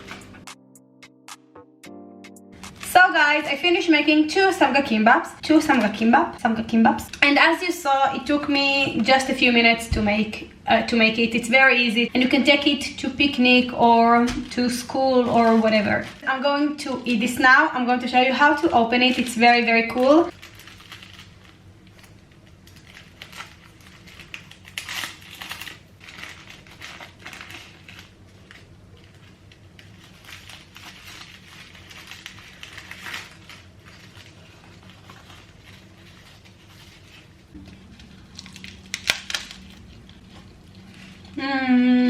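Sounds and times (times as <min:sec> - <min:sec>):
plastic wrapper crinkling: 0:00.0 - 0:00.5, 0:02.6 - 0:09.6, 0:12.2 - 0:17.3, 0:18.2 - 0:41.4
crispy seaweed crunching: 0:02.6 - 0:03.3, 0:19.9 - 0:41.8
dry seaweed rustling: 0:20.3 - 0:41.7.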